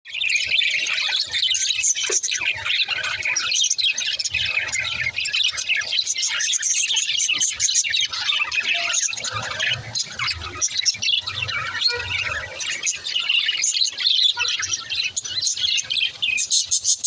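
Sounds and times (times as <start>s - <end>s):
budgerigars chattering and chirping: 0.1s - 17.0s.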